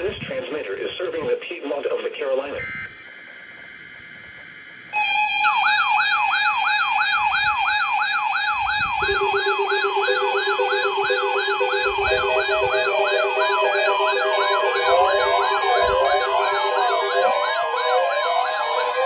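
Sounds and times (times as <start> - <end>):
steady alarm tone: 2.6 - 19.0
falling siren sweep: 5.0 - 19.0
lower steady tone: 8.6 - 19.0
on-off beeping: 8.9 - 19.0.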